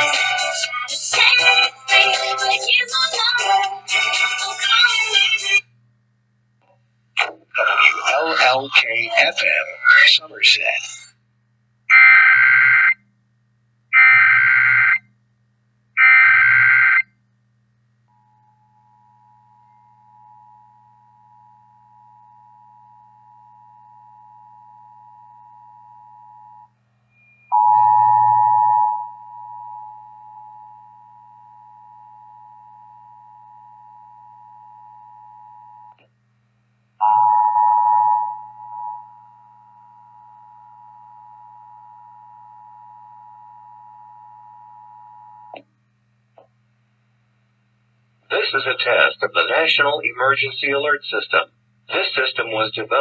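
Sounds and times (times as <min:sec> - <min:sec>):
low hum: 0:17.2 - 0:49.2.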